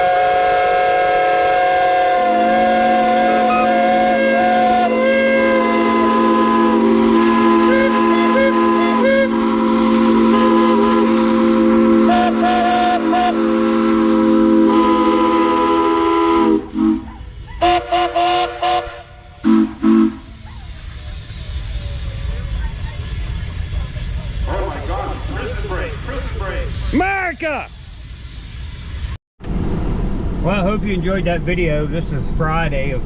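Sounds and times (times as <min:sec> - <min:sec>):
steam whistles blowing a chord: 0:00.0 - 0:22.1.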